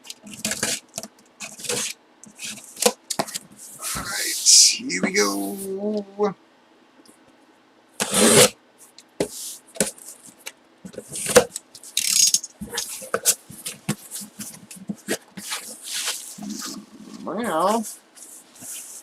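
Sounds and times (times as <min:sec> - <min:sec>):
cardboard box scraping: 0:08.0 - 0:08.5.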